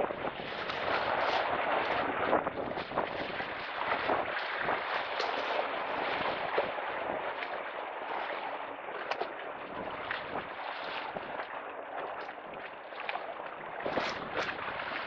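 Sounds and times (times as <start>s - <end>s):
faint short splashes: 0.0s - 15.0s
lake water splashing on shore: 0.0s - 15.0s.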